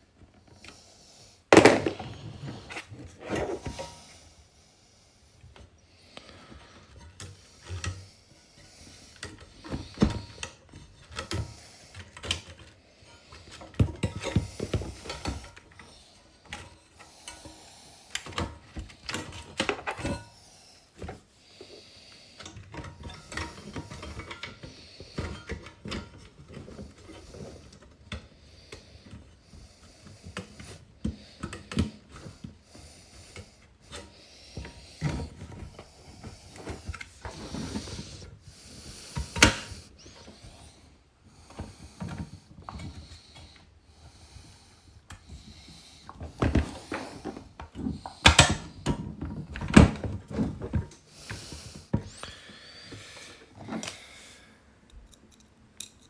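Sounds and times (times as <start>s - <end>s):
plastic parts clicking and knocking: 1.5s - 3.6s, 46.2s - 51.0s.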